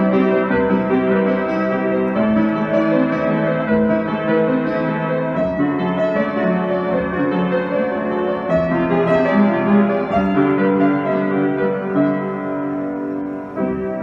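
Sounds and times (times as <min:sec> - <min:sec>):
solo piano slow melody: 0:00.0 - 0:14.0.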